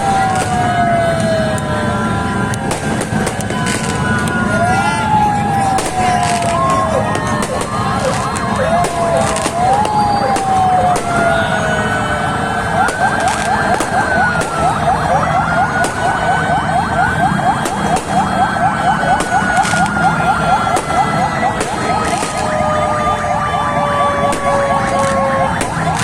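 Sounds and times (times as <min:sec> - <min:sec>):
ambulance sirens wailing: 0:00.0 - 0:26.0
ambulance sirens yelping: 0:00.0 - 0:26.0
fireworks bangs: 0:02.5 - 0:04.4, 0:05.0 - 0:11.5, 0:12.8 - 0:14.9, 0:15.8 - 0:16.4, 0:17.6 - 0:22.6, 0:24.2 - 0:26.0.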